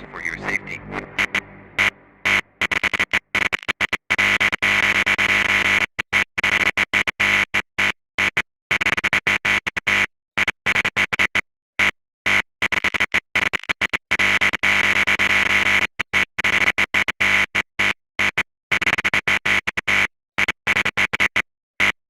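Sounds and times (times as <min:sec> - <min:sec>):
harsh distorted buzzing noise bursts: 0:00.0 - 0:03.4.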